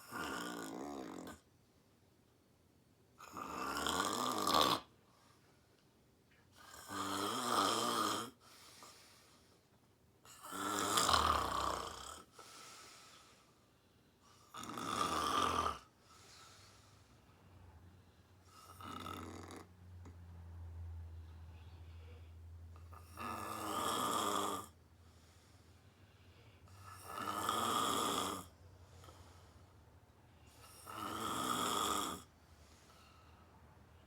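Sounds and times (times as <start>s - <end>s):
woman snoring: 0.0s - 1.4s, 3.2s - 4.9s, 6.6s - 8.4s, 10.3s - 12.3s, 14.5s - 15.9s, 18.5s - 19.7s, 22.9s - 24.8s, 26.8s - 28.5s, 30.5s - 32.3s.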